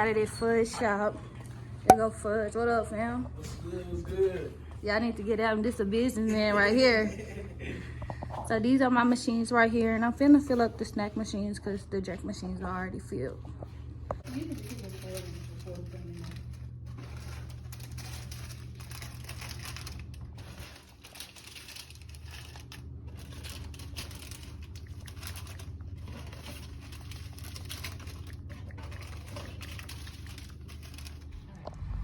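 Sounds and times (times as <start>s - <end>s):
low steady hum: 0.0s - 32.0s
plastic snack bags crinkling: 14.2s - 31.4s.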